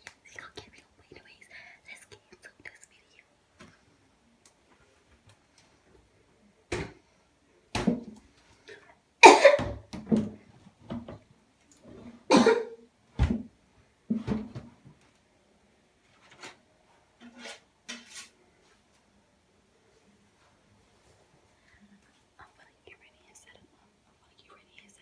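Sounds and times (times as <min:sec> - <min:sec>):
person coughing harshly: 0:09.2 - 0:09.8, 0:12.3 - 0:12.8.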